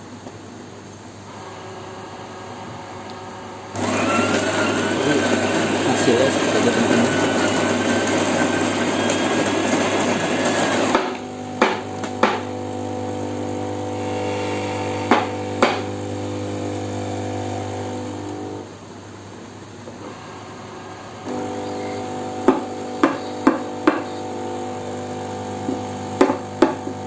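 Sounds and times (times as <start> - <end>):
machine hum: 1.1 - 27.0
sharp knocks: 10.9 - 12.5.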